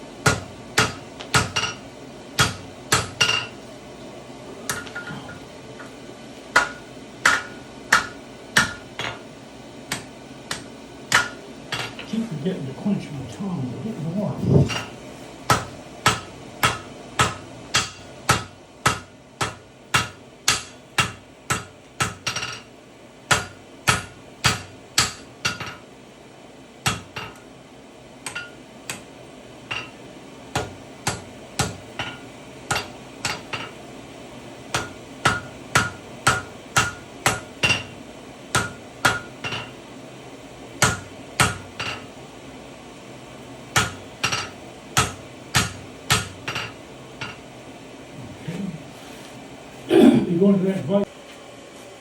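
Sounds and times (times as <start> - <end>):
hammer striking hot steel on anvil: 0.2 - 1.8, 2.4 - 3.6, 4.7 - 5.4, 6.5 - 9.2, 9.9 - 12.1, 14.6 - 22.7, 23.3 - 25.9, 26.8 - 27.4, 28.2 - 29.1, 29.7 - 33.8, 34.7 - 39.8, 40.8 - 42.1, 43.7 - 47.4.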